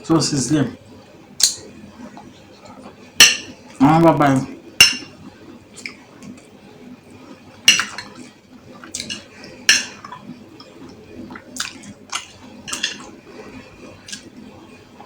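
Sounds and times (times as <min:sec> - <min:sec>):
cutlery clinking against bowl: 0:03.2 - 0:03.6, 0:04.8 - 0:05.2, 0:07.7 - 0:10.3, 0:11.6 - 0:13.2.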